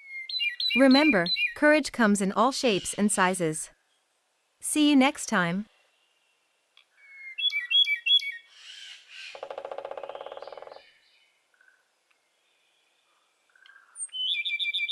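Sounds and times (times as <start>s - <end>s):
bird chirps: 0.0s - 1.6s, 7.0s - 11.8s, 13.5s - 14.9s.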